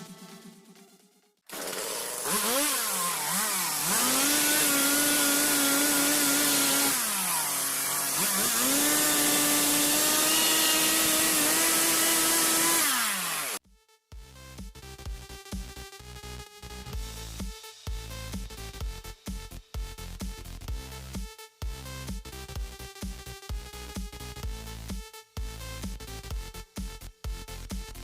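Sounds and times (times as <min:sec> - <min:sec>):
power tool motor running: 0:01.5 - 0:13.6.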